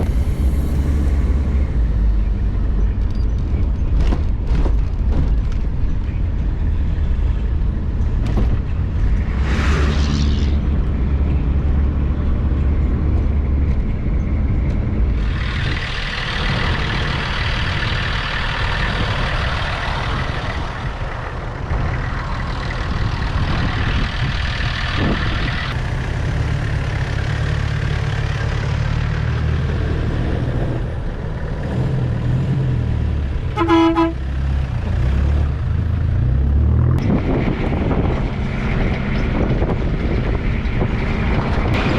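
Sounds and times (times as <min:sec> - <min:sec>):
off-road vehicle engine running: 0:00.0 - 0:41.9
vehicle horn toot: 0:33.6 - 0:34.3.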